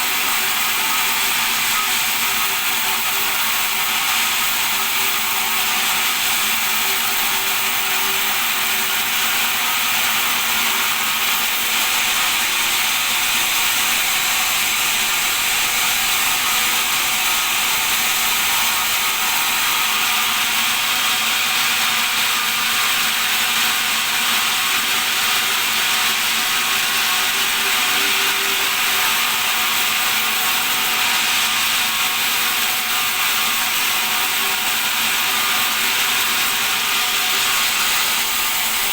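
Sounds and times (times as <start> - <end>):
bandsaw running: 0.0 - 38.9.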